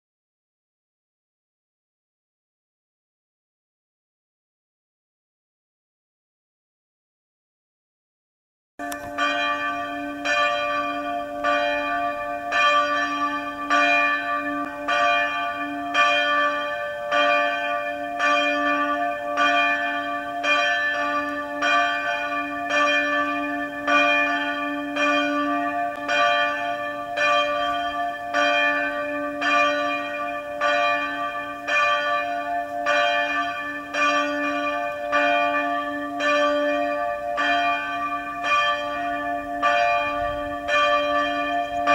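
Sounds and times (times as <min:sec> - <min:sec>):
church bells ringing: 0:08.8 - 0:41.9.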